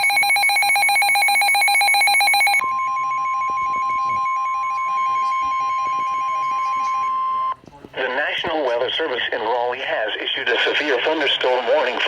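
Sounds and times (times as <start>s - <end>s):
faint beeping: 0.0s - 7.6s
steady attention tone: 0.0s - 7.6s.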